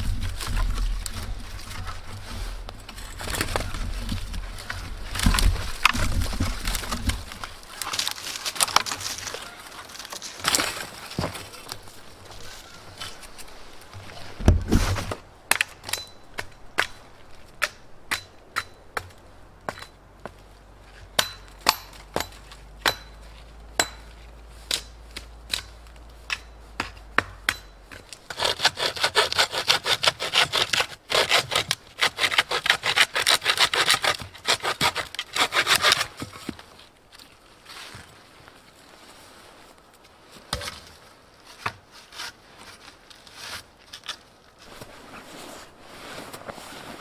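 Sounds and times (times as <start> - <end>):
hand saw sawing wood: 28.3 - 36.4.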